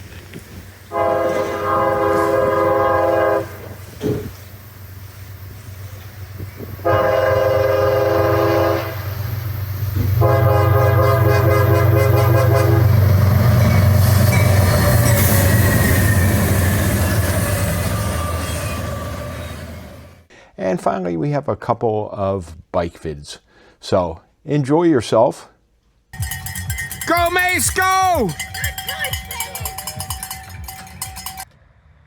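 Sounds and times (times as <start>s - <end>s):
train rumble and wheel clatter: 0.0s - 20.3s, 26.2s - 31.6s
locomotive air horn: 0.9s - 4.2s, 6.8s - 9.3s, 10.0s - 14.2s.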